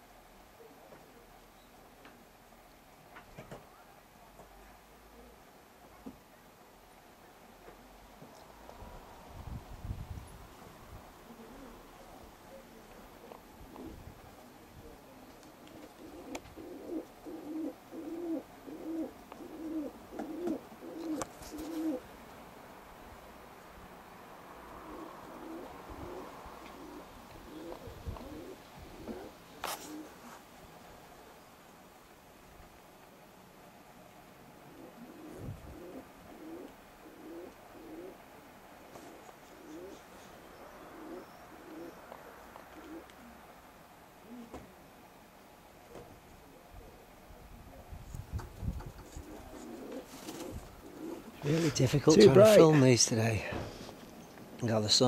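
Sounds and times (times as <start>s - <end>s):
pigeon cooing: 11.2s - 22.1s, 24.8s - 30.3s, 34.6s - 38.2s, 38.8s - 43.4s, 44.2s - 44.6s, 48.8s - 51.7s.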